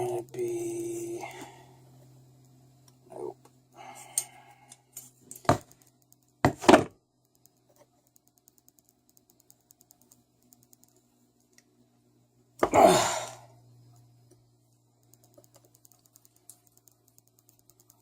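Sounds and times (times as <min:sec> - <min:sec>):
faint rapid clicking: 0:05.7 - 0:06.4, 0:07.2 - 0:11.8, 0:13.9 - 0:18.0.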